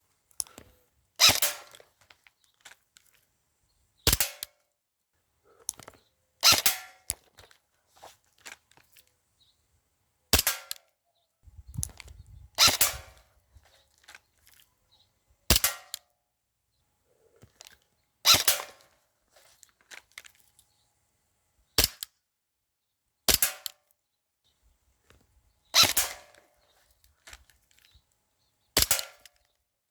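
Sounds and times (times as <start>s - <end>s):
airsoft gun shots: 1.2s - 1.7s, 4.1s - 4.5s, 6.4s - 6.9s, 10.4s - 10.8s, 12.6s - 13.2s, 15.5s - 15.9s, 18.3s - 18.8s, 23.3s - 23.7s, 25.8s - 26.4s, 28.8s - 29.2s.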